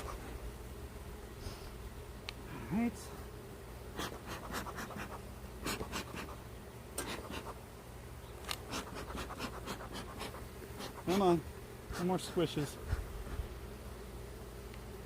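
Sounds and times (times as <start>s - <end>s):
beehive parts scraping and clicking: 8.4s - 11.3s.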